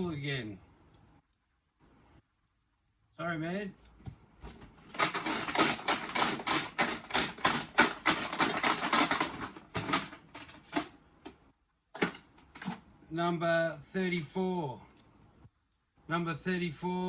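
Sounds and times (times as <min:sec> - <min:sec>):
hard pieces rattling in shaken container: 0:05.0 - 0:10.9.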